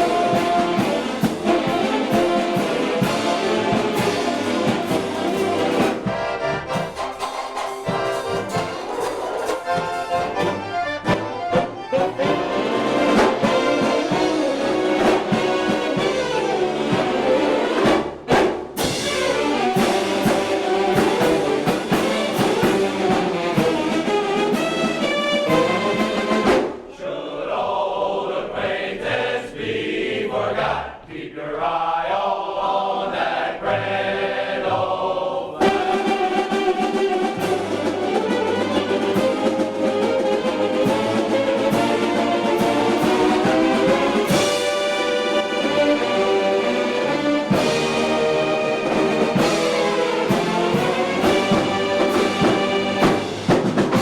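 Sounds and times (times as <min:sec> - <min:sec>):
string band playing: 0:00.0 - 0:26.9, 0:35.6 - 0:54.0.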